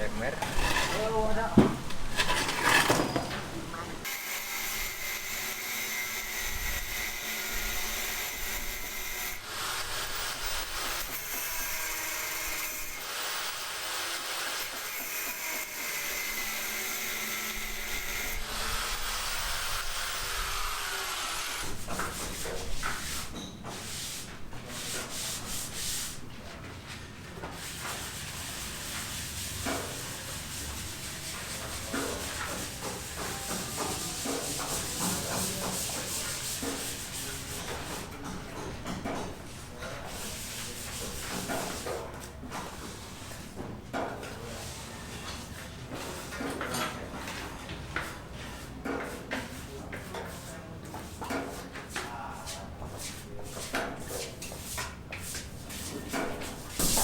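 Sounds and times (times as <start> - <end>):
rubbing and scraping: 0.0 - 3.9, 20.8 - 26.6, 27.5 - 38.3, 39.5 - 42.0.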